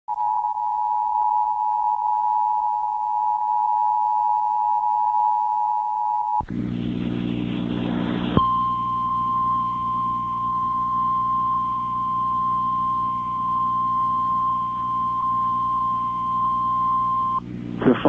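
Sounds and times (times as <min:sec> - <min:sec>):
hissing static: 0:06.4 - 0:18.0
low hum: 0:06.4 - 0:18.0.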